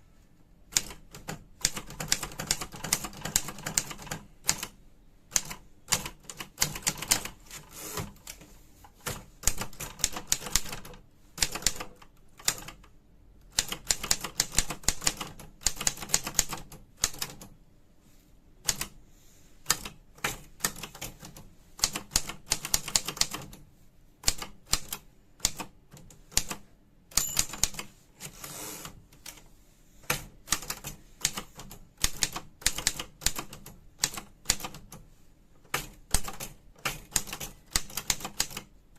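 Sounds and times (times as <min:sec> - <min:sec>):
typewriter key strikes: 0:27.1 - 0:27.8.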